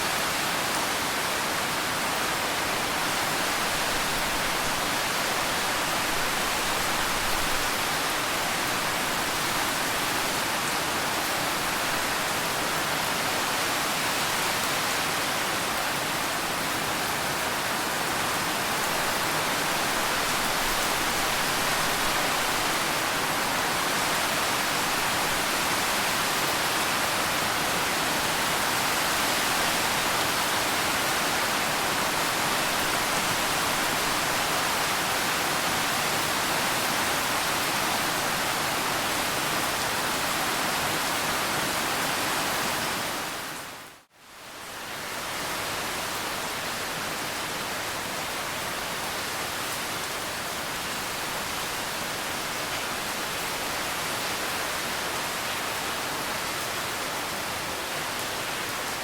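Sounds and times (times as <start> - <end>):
steady rain hiss: 0.0 - 59.0.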